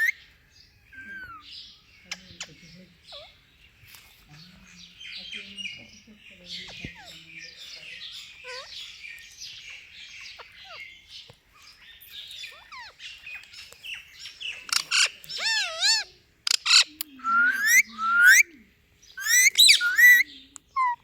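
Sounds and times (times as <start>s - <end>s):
parakeet chirping and shrill calls: 0.0s - 0.2s, 3.1s - 3.4s, 8.0s - 18.4s, 19.2s - 21.0s.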